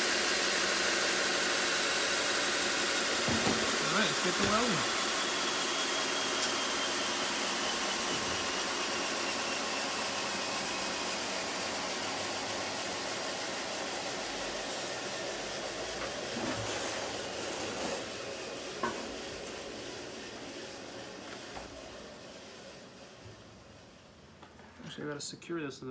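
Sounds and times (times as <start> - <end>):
electric motor whirring down: 0.0 - 11.2.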